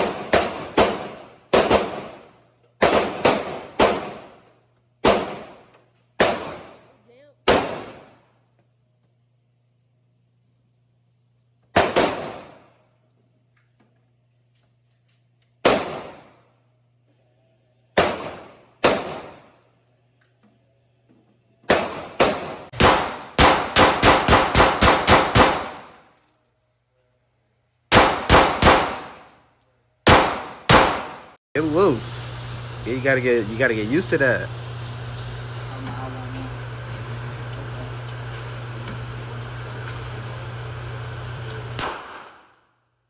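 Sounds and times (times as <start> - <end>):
pistol shots: 0.0 - 4.4, 5.0 - 5.6, 6.2 - 6.9, 7.5 - 8.2, 11.8 - 12.7, 15.6 - 16.4, 18.0 - 19.5, 21.7 - 26.0, 27.9 - 29.4, 30.0 - 31.4, 41.8 - 42.5.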